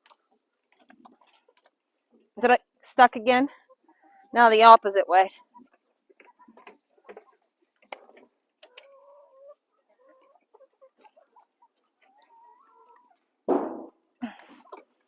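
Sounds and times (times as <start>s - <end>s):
hens clucking: 3.5s - 13.4s
loud knock: 13.5s - 13.9s.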